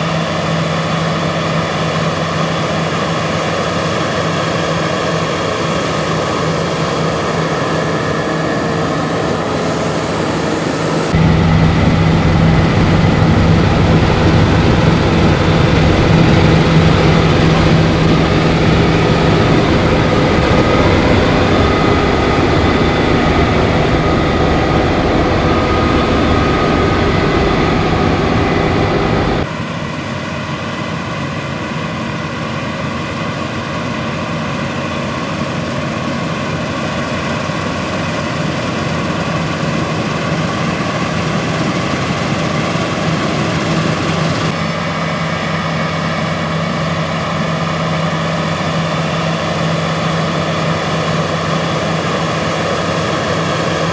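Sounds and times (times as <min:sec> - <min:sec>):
combine harvester running: 0:00.0 - 0:53.9.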